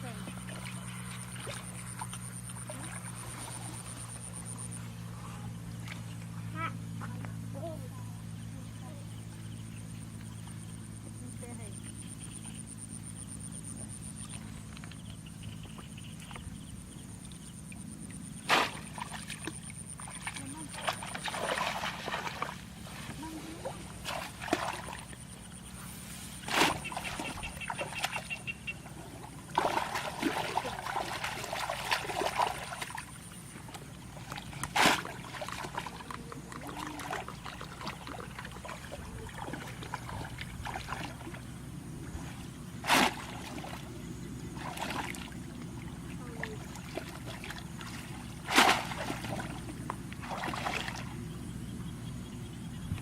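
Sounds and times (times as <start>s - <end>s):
faint low hum: 0.0s - 53.0s
water splashing and trickling: 17.6s - 25.7s, 26.4s - 51.5s
sharp splashes: 18.4s - 25.7s, 26.4s - 28.8s, 29.4s - 41.5s, 42.2s - 51.4s.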